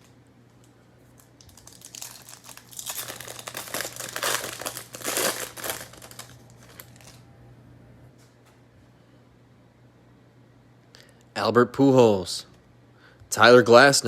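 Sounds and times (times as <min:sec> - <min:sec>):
foil wrapper tearing and crinkling: 0:01.4 - 0:07.2.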